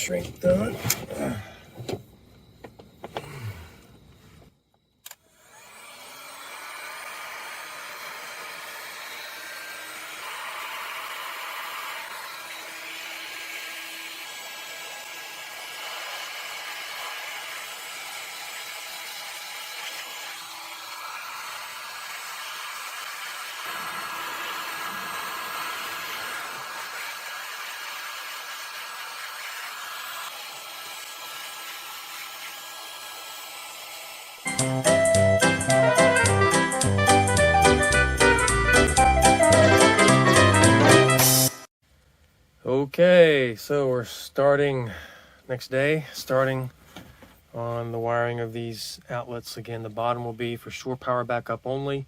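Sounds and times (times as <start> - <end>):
heat gun blowing: 5.0 - 36.9.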